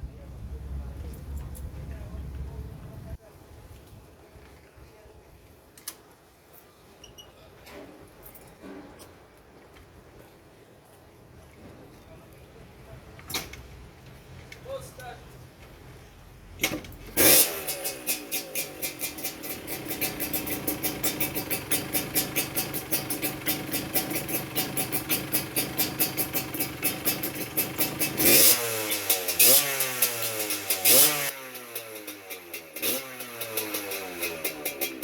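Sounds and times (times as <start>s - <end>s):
two-stroke engine idling: 17.2s - 35.0s.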